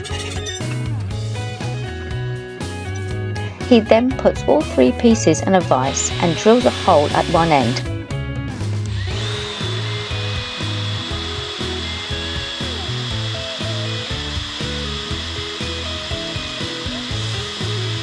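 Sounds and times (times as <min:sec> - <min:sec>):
background music: 0:00.0 - 0:18.0
electric drill whining: 0:04.7 - 0:08.0, 0:08.6 - 0:18.0.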